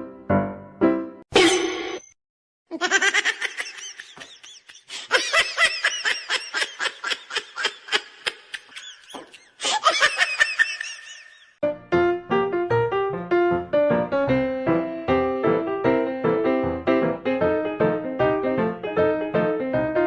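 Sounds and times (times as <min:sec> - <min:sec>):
high-pitched laughter: 0:02.7 - 0:11.6.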